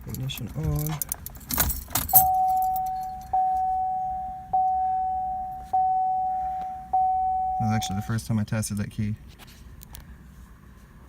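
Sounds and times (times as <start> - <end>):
key turning in ignition: 0.0 - 3.9
keys jingling: 0.0 - 4.4
dashboard warning chime dinging: 1.6 - 8.2.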